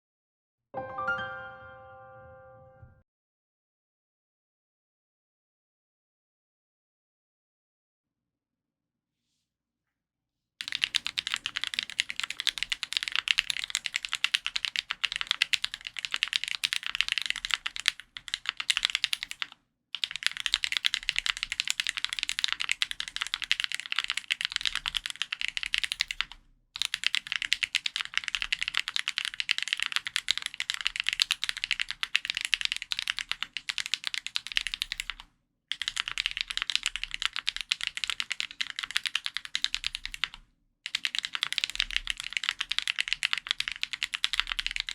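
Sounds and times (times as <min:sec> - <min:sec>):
rapid typing on mechanical keyboard: 0:10.6 - 0:44.9.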